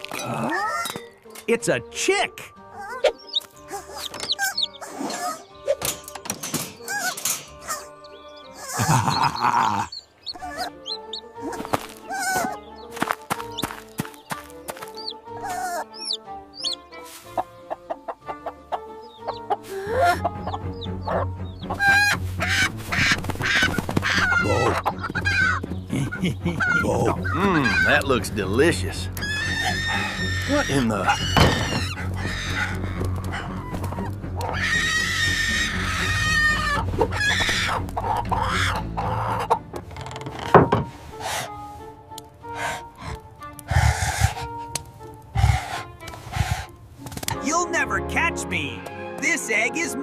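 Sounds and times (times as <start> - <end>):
cartoon background music: 0.0 - 50.0
chicks peeping: 2.8 - 5.5, 6.9 - 28.3, 29.1 - 39.6
hen clucking: 2.8 - 5.5, 6.9 - 39.7, 42.5 - 46.8.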